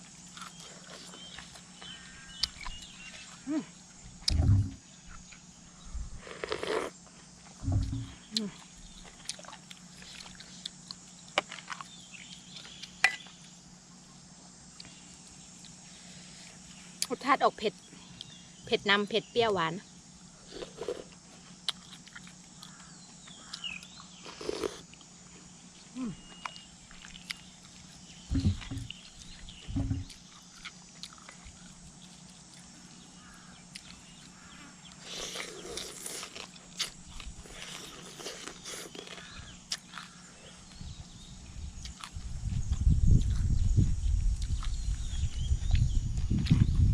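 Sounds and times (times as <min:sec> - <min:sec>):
person slurping and chewing soup: 0:06.3 - 0:07.0, 0:24.4 - 0:24.9
mouth eating sounds: 0:23.4 - 0:25.0, 0:35.0 - 0:40.2.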